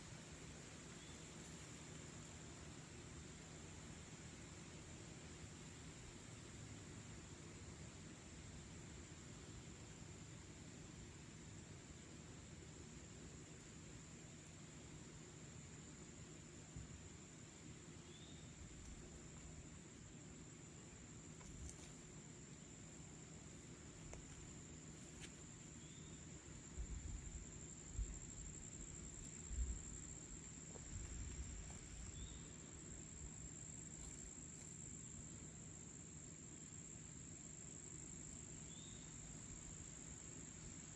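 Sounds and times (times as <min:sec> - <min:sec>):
crickets trilling: 0:00.0 - 0:03.4, 0:12.8 - 0:40.9.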